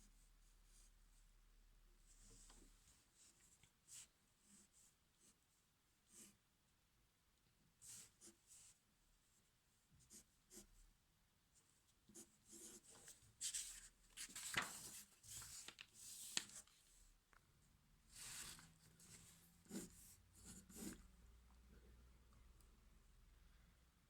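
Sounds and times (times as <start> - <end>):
pen scratching on paper: 19.6 - 21.0.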